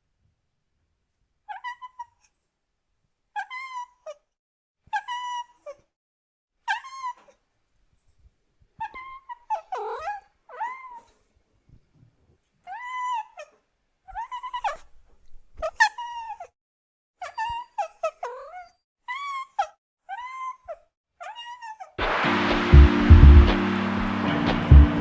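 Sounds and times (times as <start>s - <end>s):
cat crying: 8.8s - 11.1s, 12.7s - 13.6s, 17.2s - 22.0s.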